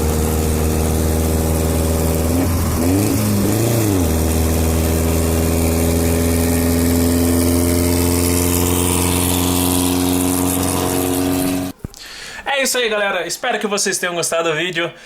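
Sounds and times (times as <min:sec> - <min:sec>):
car engine revving and idling: 0:00.0 - 0:11.8.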